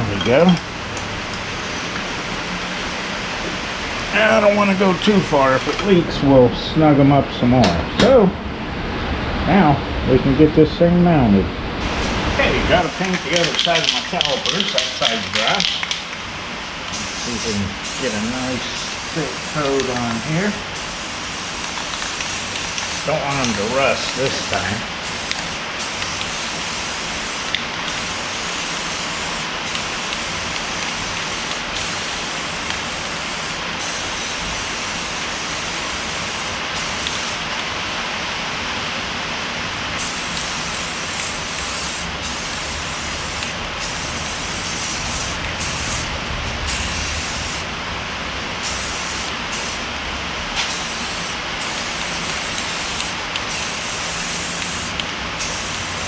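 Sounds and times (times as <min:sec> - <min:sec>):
aerosol spray paint spraying: 0:12.9 - 0:16.2, 0:16.9 - 0:37.5, 0:40.0 - 0:46.1, 0:46.7 - 0:47.7, 0:48.6 - 0:49.9, 0:50.6 - 0:56.0.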